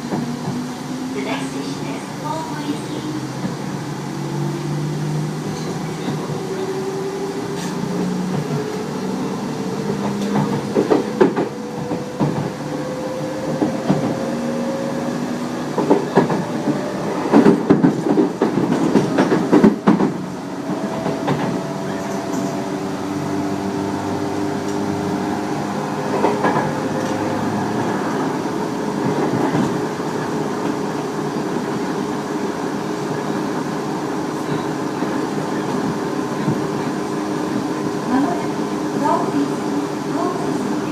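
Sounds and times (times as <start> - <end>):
train wheels clattering over rail joints: 9.8 - 12.6, 15.7 - 22.7.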